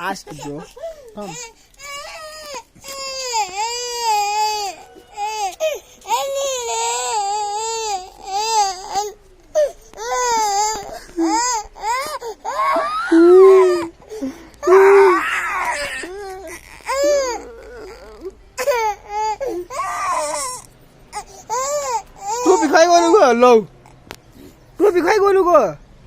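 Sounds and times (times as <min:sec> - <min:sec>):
young child crying: 0:08.8 - 0:14.0, 0:14.6 - 0:18.7.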